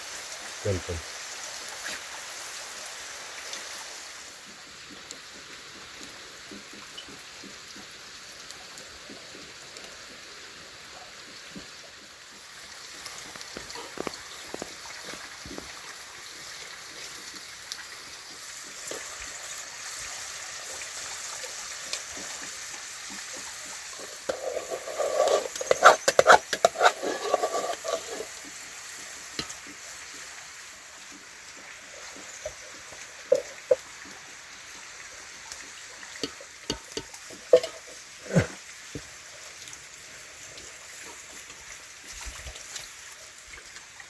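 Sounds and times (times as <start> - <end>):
heavy rain hiss: 0.0 - 4.8, 12.1 - 36.2, 36.9 - 42.8.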